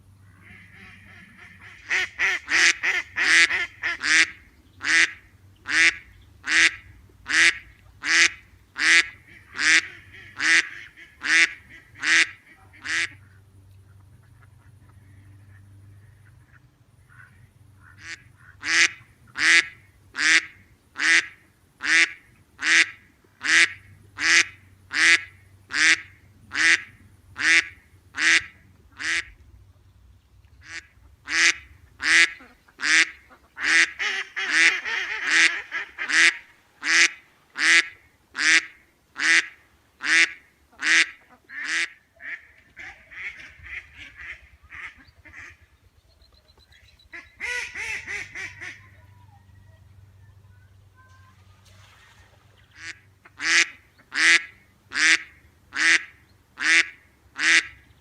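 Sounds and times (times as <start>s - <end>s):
duck quacking: 0.2s - 29.4s, 30.6s - 45.7s, 47.1s - 49.2s, 52.6s - 57.9s.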